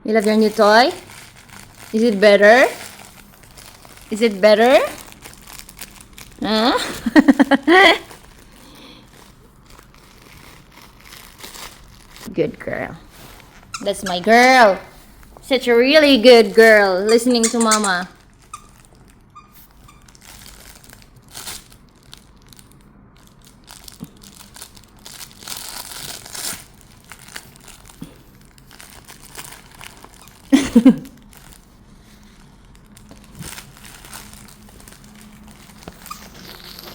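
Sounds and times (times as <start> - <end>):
dog chewing crinkly toy: 0.2 - 6.7, 8.0 - 12.3, 13.1 - 36.9.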